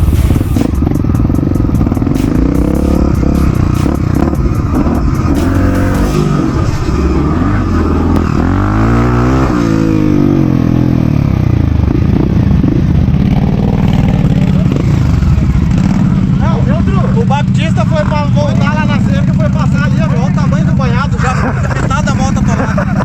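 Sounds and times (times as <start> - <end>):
rapid clatter: 0.0 - 6.9
motorcycle engine revving: 0.0 - 23.0.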